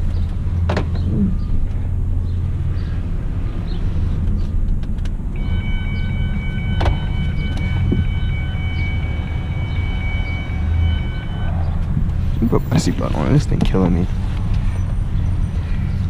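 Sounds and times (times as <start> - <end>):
car engine and road rumble: 0.0 - 16.0
seatbelt warning chime: 5.4 - 12.8.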